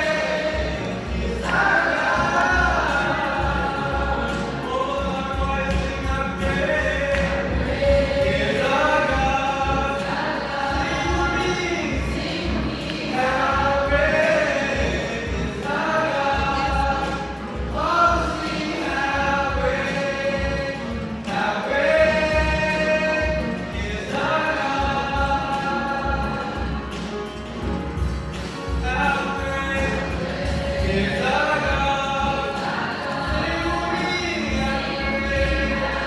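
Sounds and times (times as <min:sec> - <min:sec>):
choir singing: 0:00.0 - 0:36.0.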